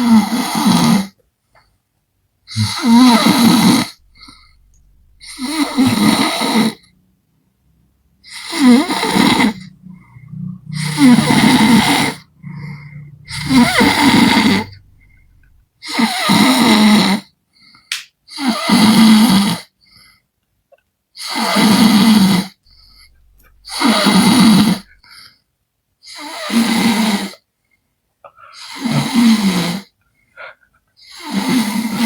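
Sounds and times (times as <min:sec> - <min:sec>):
man snoring loudly: 0:00.0 - 0:01.1, 0:02.5 - 0:06.9, 0:08.3 - 0:17.3, 0:18.3 - 0:19.7, 0:21.2 - 0:25.0, 0:26.1 - 0:27.4, 0:28.6 - 0:29.9, 0:31.1 - 0:32.0.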